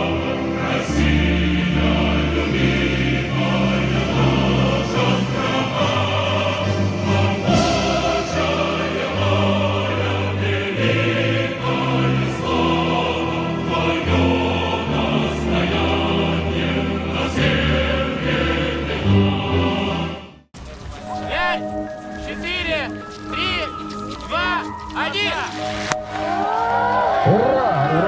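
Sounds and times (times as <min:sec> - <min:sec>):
choir singing: 0:00.0 - 0:20.5.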